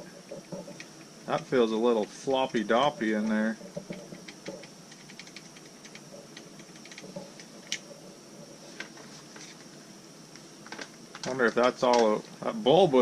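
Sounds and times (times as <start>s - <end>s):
faint high-pitched hiss: 0.0s - 13.0s.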